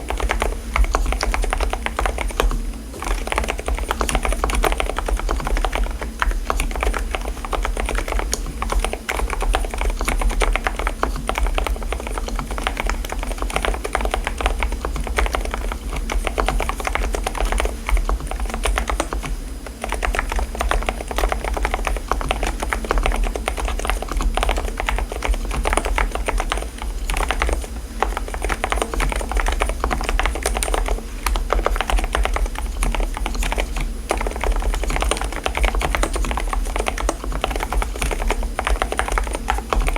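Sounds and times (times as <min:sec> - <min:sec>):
soft keyboard typing: 0:00.0 - 0:39.9
steady low hum: 0:00.0 - 0:39.9.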